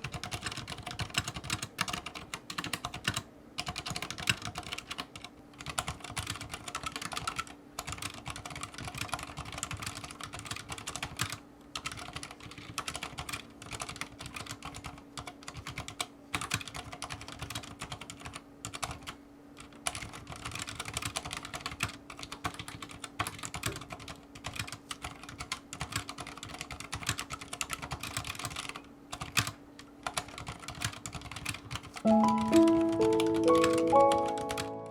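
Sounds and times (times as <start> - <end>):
muted keyboard typing: 0.0 - 34.9
loud musical notes: 32.1 - 34.9.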